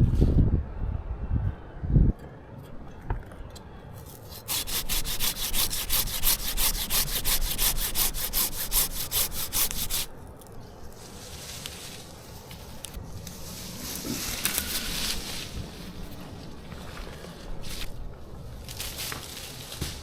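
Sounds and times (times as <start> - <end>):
handsaw cutting wood: 4.0 - 10.1.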